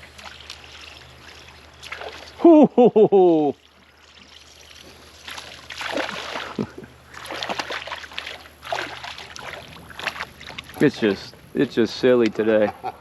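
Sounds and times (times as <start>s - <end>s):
water splashing against boat: 3.6s - 12.9s.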